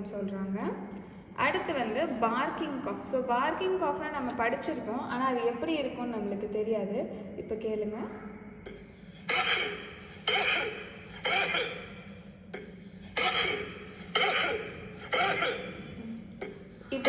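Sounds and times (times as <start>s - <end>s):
person coughing: 8.7s - 12.0s, 12.6s - 17.0s.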